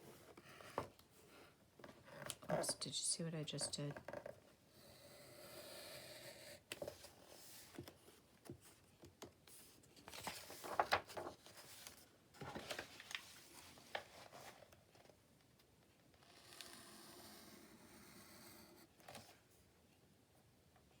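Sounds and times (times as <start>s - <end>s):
paper rustling: 10.0s - 14.8s.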